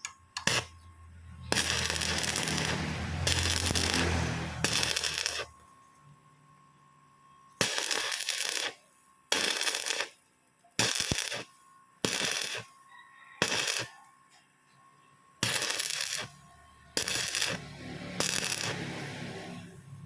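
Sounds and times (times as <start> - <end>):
arc welding crackling: 0.0 - 5.7, 7.6 - 14.1, 15.4 - 20.0
faint steady high tone: 12.6 - 15.4.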